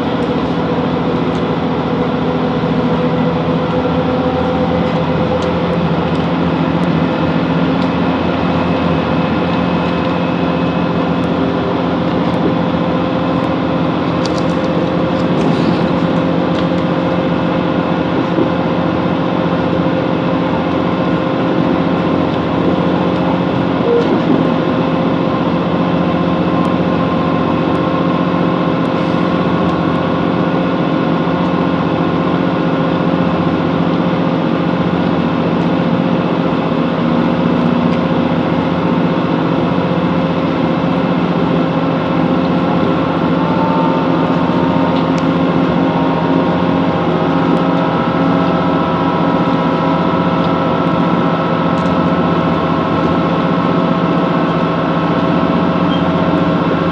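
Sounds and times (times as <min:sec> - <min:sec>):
diesel engine drone: 0:00.0 - 0:56.9
train wheels on track: 0:00.0 - 0:56.9.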